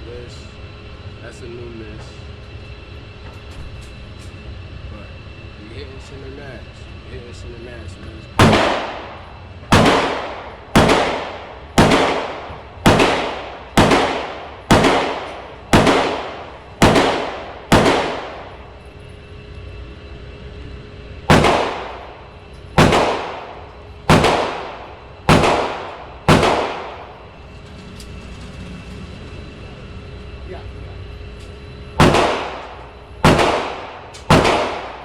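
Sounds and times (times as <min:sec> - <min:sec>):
pistol shots with ringing tail: 0:08.4 - 0:18.8, 0:21.2 - 0:27.3, 0:32.0 - 0:35.0.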